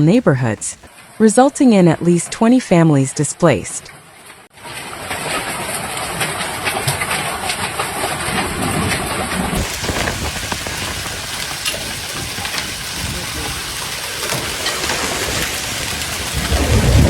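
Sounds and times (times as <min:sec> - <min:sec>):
close rain drop impacts: 0:04.0 - 0:17.0
rain pouring: 0:04.0 - 0:17.0.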